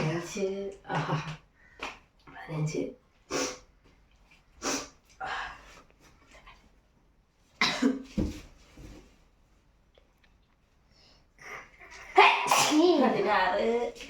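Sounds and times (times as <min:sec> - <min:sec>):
person coughing or sneezing: 0:07.6 - 0:08.2, 0:12.4 - 0:13.0.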